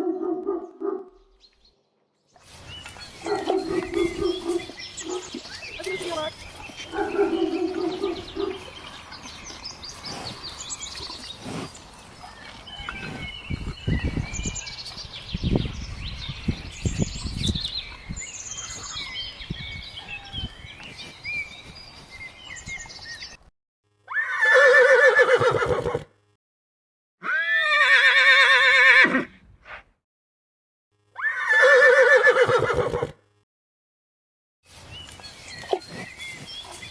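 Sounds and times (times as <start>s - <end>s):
birds chirping: 0.0s - 23.5s
horse whinnying: 24.1s - 26.1s, 27.2s - 29.4s, 31.2s - 33.2s.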